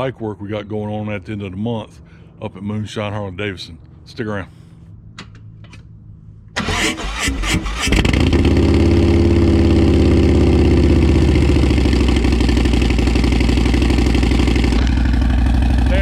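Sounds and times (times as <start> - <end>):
starter motor cranking: 6.6 - 8.4
motorcycle engine idling: 8.2 - 16.0.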